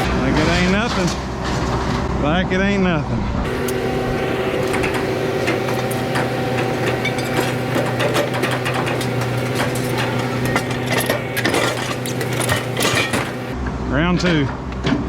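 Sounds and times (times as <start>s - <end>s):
machine engine running steadily: 0.0s - 13.7s
scrap metal clanks and knocks: 3.5s - 13.6s.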